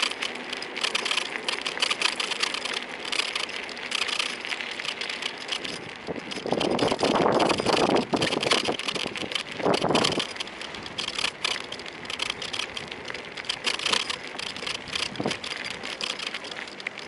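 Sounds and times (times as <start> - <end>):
short rattling clicks: 0.0 - 17.0
wind rushing over microphone: 5.7 - 11.0.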